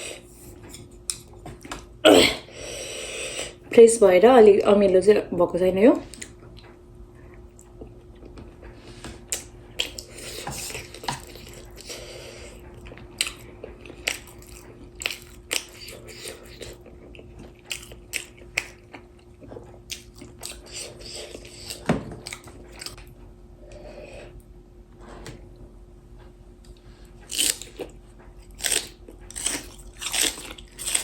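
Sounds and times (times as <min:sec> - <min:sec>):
faint steady hum: 0:00.0 - 0:31.0
person chewing food: 0:06.1 - 0:23.1, 0:26.7 - 0:31.0.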